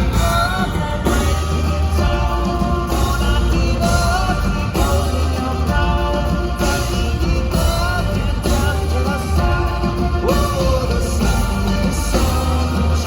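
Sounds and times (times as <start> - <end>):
rock band playing live: 0.0 - 13.0.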